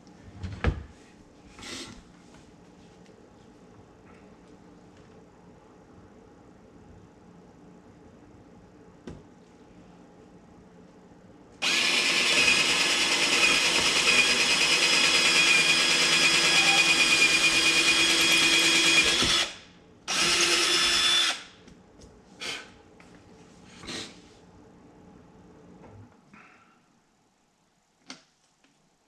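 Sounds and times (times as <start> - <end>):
cordless drill boring: 11.6 - 21.5.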